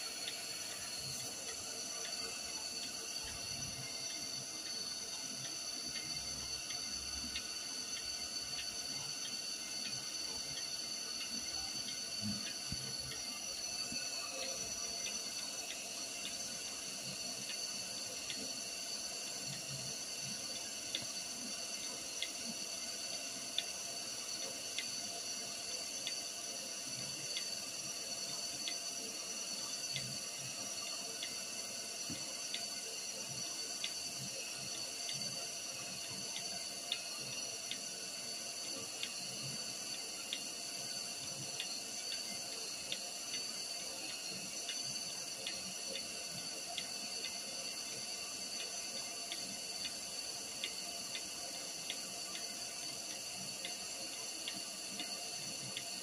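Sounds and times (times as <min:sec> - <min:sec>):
faint high whine: 0:00.0 - 0:56.0
light ticks: 0:06.7 - 0:16.5, 0:29.6 - 0:56.0.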